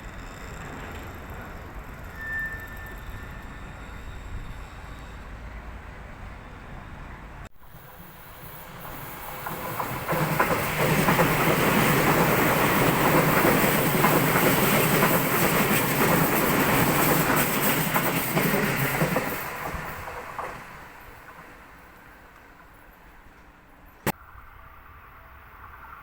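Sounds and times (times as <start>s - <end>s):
electric train passing: 0.0s - 26.0s
wheels clattering over rail joints: 9.3s - 21.8s.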